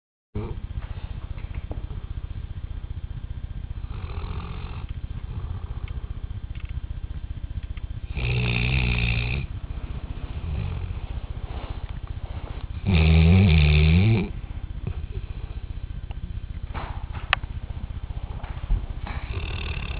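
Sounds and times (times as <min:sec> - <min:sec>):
dog snoring: 0:03.6 - 0:06.4, 0:08.0 - 0:15.8, 0:18.3 - 0:19.9.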